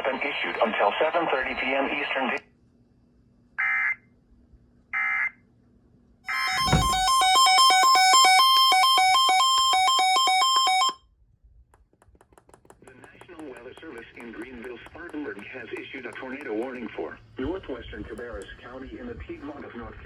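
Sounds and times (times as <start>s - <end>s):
electronic alert tone beeping: 6.3s - 11.0s
thump: 6.5s - 7.1s.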